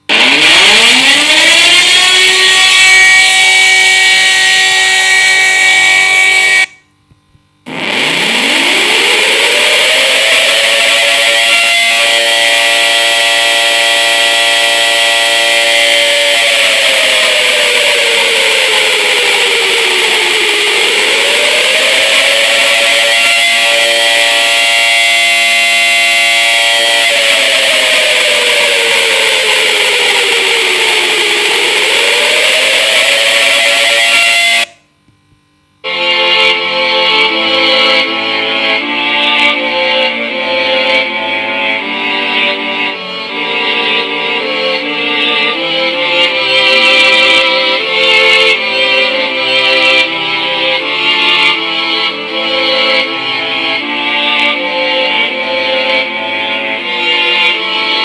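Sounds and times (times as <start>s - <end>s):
warning siren wailing: 0.0s - 6.8s, 7.7s - 34.8s.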